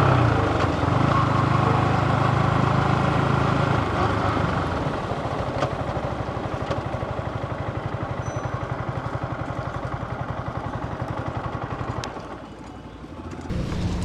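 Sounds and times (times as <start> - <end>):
motorcycle engine idling: 0.0 - 14.0.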